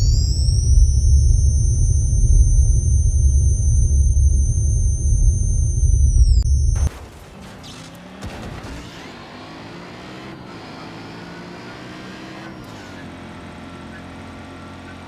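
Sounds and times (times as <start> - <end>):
loud low rumble: 0.0 - 6.9
vehicle engine running: 0.0 - 6.9.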